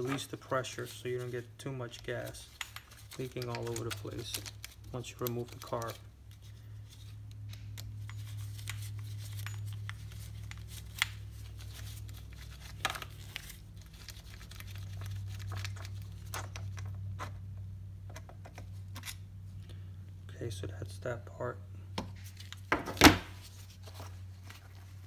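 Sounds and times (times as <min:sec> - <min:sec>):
small parts clicking and rattling: 0:00.0 - 0:17.4
steady low hum: 0:00.0 - 0:25.0.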